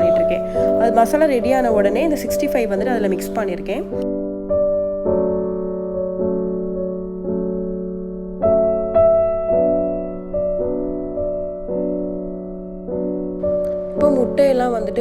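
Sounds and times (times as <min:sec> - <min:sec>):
soft piano chords: 0:00.0 - 0:15.0.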